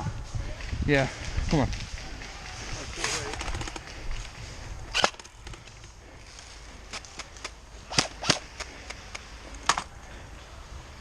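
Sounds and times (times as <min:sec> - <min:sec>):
airsoft gun shots: 0:07.9 - 0:08.7.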